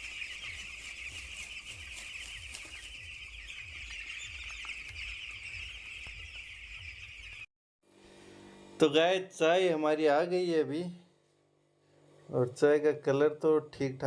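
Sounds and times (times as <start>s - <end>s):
chicks peeping and chirping: 0.0s - 7.5s.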